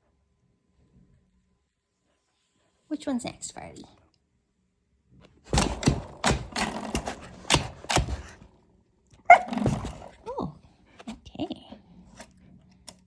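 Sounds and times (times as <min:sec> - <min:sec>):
door stoppers clicking and knocking: 0:05.5 - 0:08.4.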